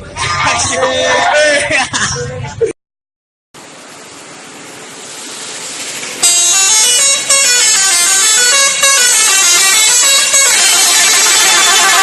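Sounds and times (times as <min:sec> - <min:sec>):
rushing noise: 0:03.6 - 0:12.0
multi-tone musical air horn: 0:06.2 - 0:12.0.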